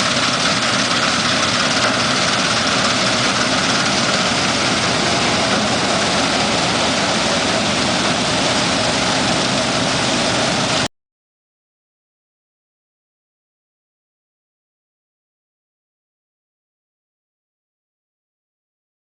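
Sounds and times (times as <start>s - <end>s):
combine harvester running: 0.0s - 10.9s.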